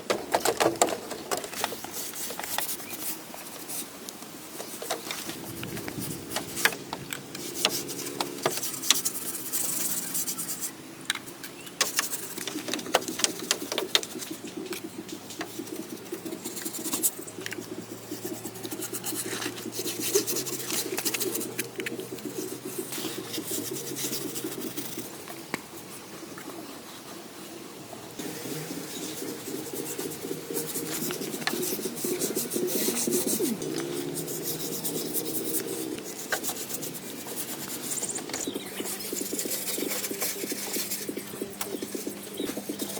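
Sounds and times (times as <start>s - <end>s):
sharp clicks and knocks: 0.0s - 2.8s, 11.0s - 25.7s
wood rubbing and scraping: 0.0s - 42.9s.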